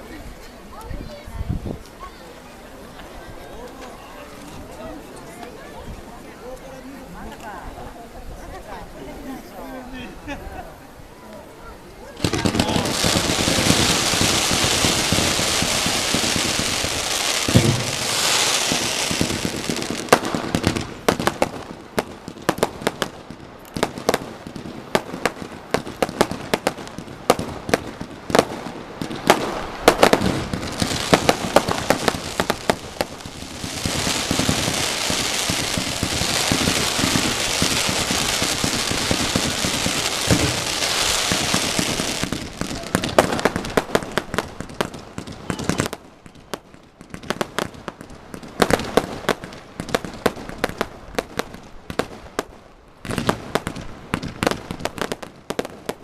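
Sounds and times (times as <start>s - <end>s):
fireworks crackling: 0.0s - 56.0s
fireworks bangs: 12.0s - 56.0s.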